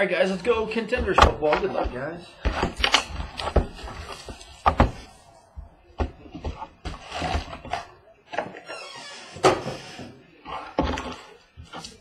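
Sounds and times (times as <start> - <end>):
cardboard and wrapper rustling: 0.3 - 8.0.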